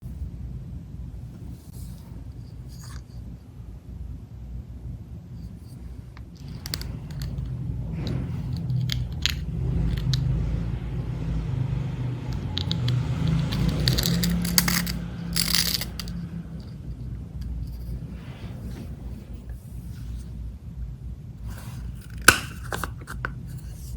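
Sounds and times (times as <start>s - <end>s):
steady low hum: 0.0s - 23.9s
small hard objects clicking: 8.5s - 10.2s, 12.3s - 16.2s.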